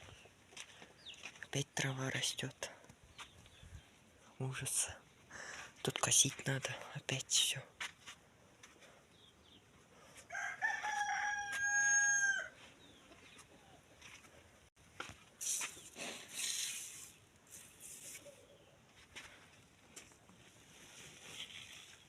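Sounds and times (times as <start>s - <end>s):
rooster crowing: 10.3s - 12.6s.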